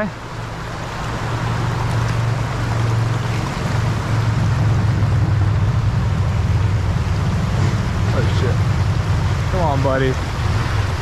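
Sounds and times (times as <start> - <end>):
creek water rushing: 0.0 - 11.0
fluttering low rumble: 0.8 - 9.5.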